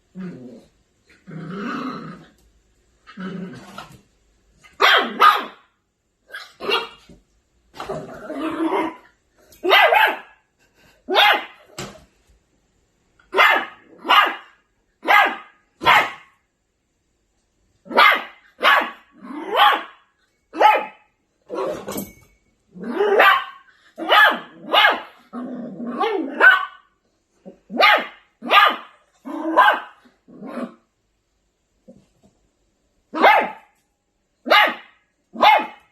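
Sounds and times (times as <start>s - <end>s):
puppy growling: 0.0s - 2.4s, 3.0s - 4.0s, 7.8s - 9.1s, 24.5s - 26.4s
puppy barking: 4.8s - 5.7s, 6.3s - 7.0s, 9.6s - 10.4s, 11.1s - 11.6s, 13.3s - 16.3s, 17.9s - 20.0s, 20.6s - 21.7s, 23.1s - 25.2s, 26.0s - 26.9s, 27.7s - 30.0s, 33.1s - 33.8s, 34.4s - 35.9s.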